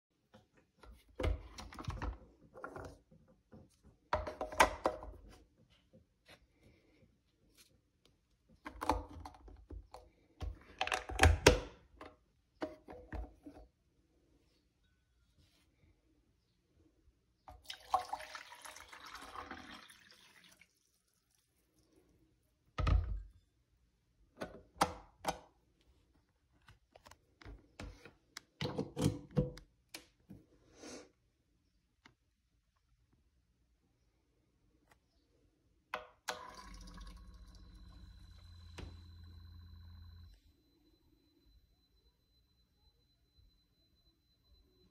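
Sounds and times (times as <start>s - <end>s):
water pouring: 17.5s - 22.0s, 36.3s - 39.0s.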